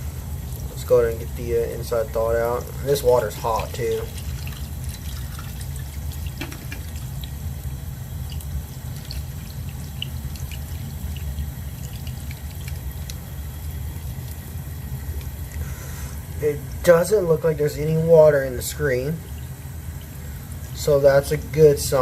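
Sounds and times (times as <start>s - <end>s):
water running from tap: 0.0s - 22.0s
small drips and ticks: 0.1s - 15.8s, 17.6s - 22.0s.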